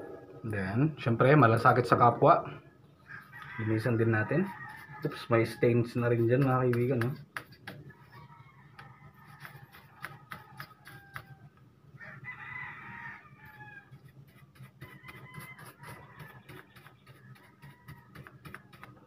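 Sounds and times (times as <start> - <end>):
rooster crowing: 3.0 - 5.9, 7.9 - 18.9.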